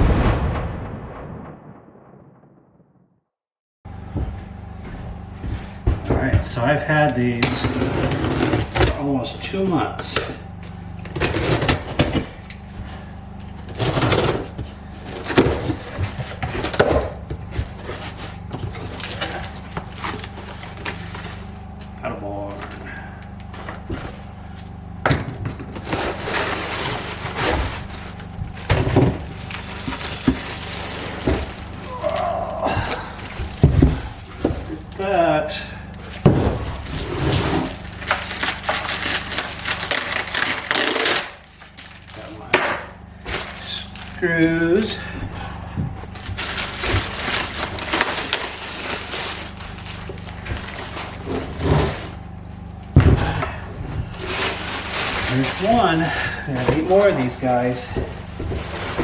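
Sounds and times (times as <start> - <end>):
steady low hum: 3.9 - 59.0
packaging rustling and scraping: 6.2 - 45.0, 45.9 - 52.9, 53.8 - 59.0
heavy thump: 52.9 - 54.1.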